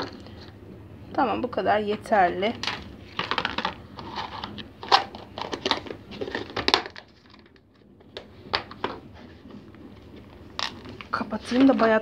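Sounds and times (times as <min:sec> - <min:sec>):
packet rustling and crinkling: 0:02.6 - 0:09.0, 0:10.0 - 0:12.0.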